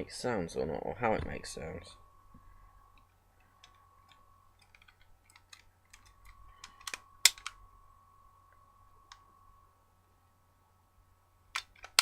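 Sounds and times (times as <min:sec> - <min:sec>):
plastic toy clicks and snaps: 0:04.7 - 0:07.6, 0:11.5 - 0:12.0.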